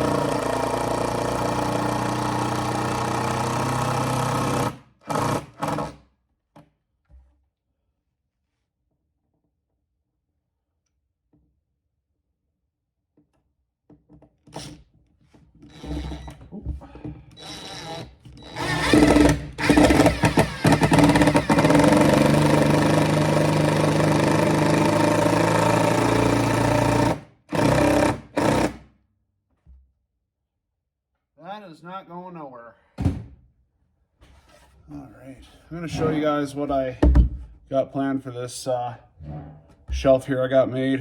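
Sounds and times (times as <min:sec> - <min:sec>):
power drill driving a screw: 0:00.0 - 0:06.0, 0:17.3 - 0:28.8.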